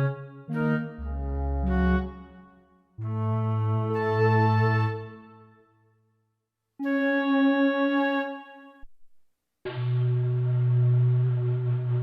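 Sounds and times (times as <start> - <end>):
sustained synthesizer note: 9.7 - 12.0.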